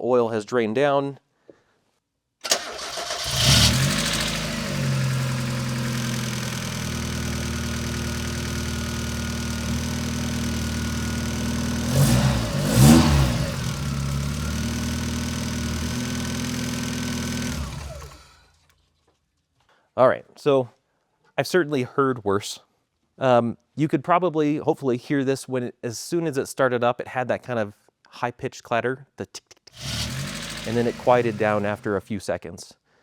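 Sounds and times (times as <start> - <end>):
engine cranking: 2.4 - 18.5, 29.8 - 32.0
engine revving: 2.5 - 18.4, 29.8 - 32.0
engine lifter ticking: 2.6 - 18.2, 29.8 - 32.0
car engine idling: 2.6 - 18.4, 29.8 - 32.0.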